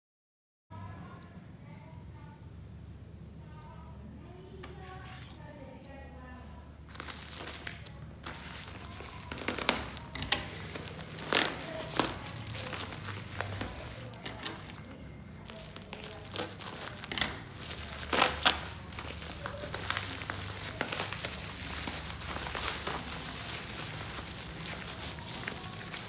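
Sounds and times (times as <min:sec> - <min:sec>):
packaging crinkling and rustling: 0:06.9 - 0:26.0.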